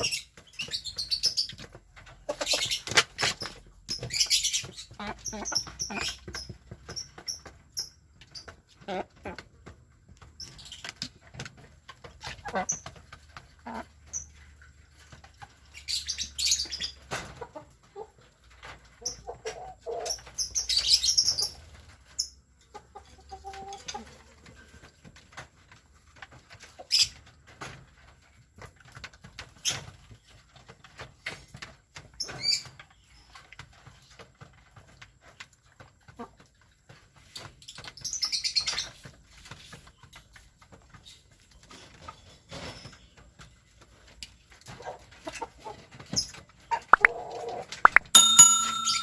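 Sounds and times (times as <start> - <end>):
chickens clucking: 0.0 - 49.0
scratching and tapping: 46.9 - 47.2, 47.8 - 49.0.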